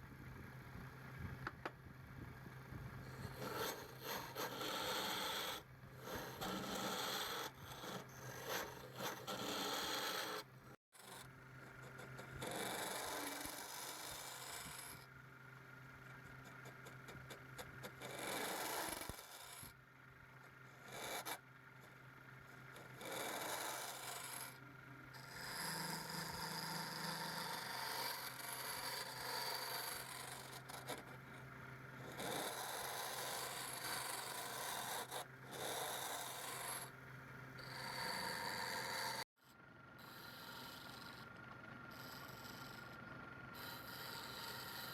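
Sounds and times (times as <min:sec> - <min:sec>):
chisel cutting spinning wood: 0:03.0 - 0:15.2, 0:16.0 - 0:19.8, 0:20.4 - 0:39.3, 0:40.0 - 0:44.9
lathe motor hum: 0:03.2 - 0:15.0, 0:21.4 - 0:39.3.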